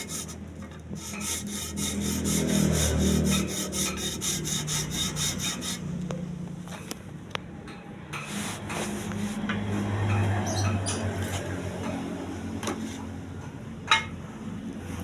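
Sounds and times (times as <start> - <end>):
fast scraping strokes on abrasive: 0.0 - 5.9.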